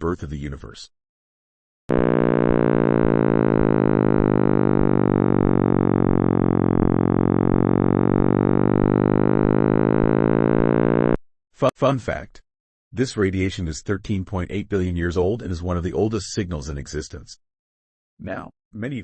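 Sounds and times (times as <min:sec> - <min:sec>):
synthesized drone of steady tones: 0:01.9 - 0:11.2.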